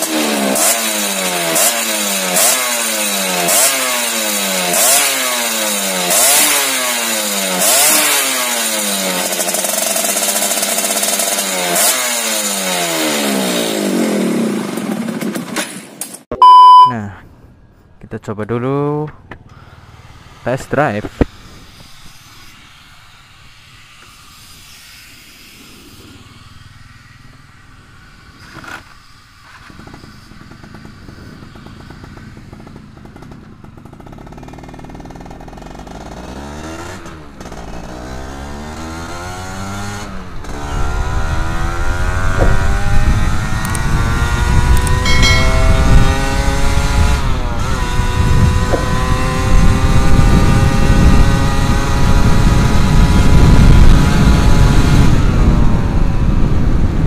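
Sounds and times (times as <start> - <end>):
motorcycle engine accelerating: 0.0 - 15.7, 19.2 - 57.0.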